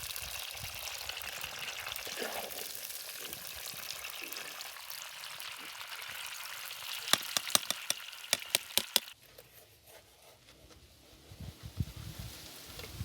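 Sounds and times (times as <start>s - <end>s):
food sizzling in frying: 2.6s - 9.2s.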